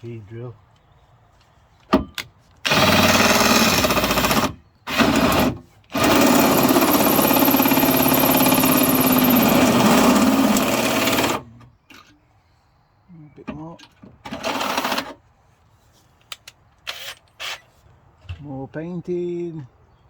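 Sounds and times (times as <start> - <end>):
power drill drilling: 2.7 - 11.4.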